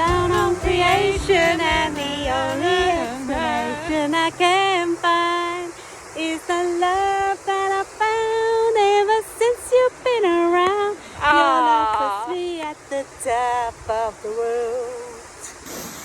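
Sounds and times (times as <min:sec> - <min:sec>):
music beat: 0:00.0 - 0:04.2
woman singing a song: 0:00.0 - 0:15.6.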